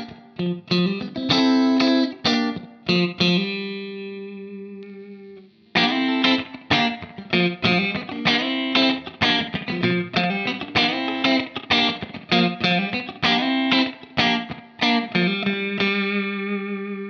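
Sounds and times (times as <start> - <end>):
electric guitar funk chord stabs: 5.8 - 17.0.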